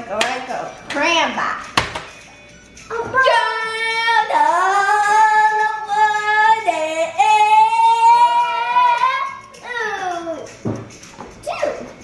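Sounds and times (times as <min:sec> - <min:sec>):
child singing high notes: 0:02.9 - 0:10.5.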